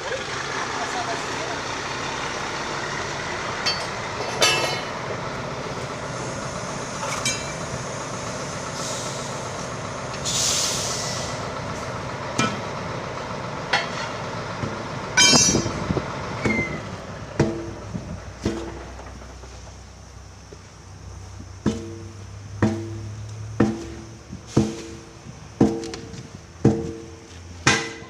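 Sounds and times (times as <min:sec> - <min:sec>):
steady background noise: 0:00.0 - 0:28.0
hissing air burst: 0:08.4 - 0:11.4
metal knocks and clanks: 0:12.4 - 0:12.7, 0:13.7 - 0:19.6, 0:21.6 - 0:28.0.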